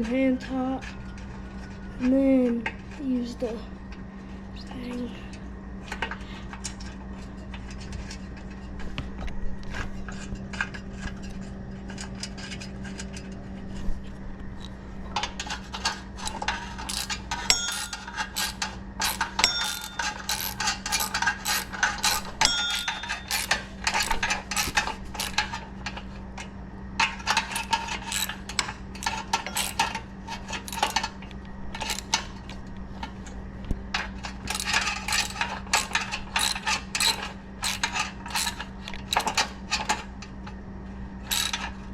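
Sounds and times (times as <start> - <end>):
socket ratchet clicking: 16.2 - 25.6, 27.3 - 30.0, 30.6 - 31.1, 31.8 - 32.2, 34.3 - 40.0, 41.3 - 41.7
light metallic clinks: 16.9 - 25.4.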